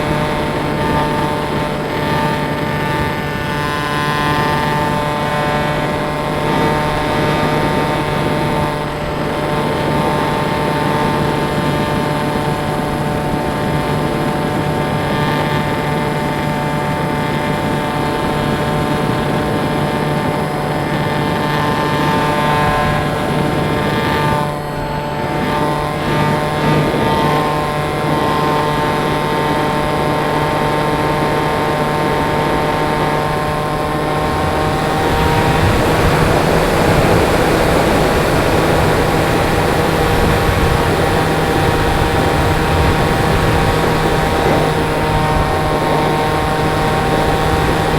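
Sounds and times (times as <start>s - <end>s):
electric propeller motor whining: 0.0s - 47.9s
wind rushing: 32.6s - 47.9s.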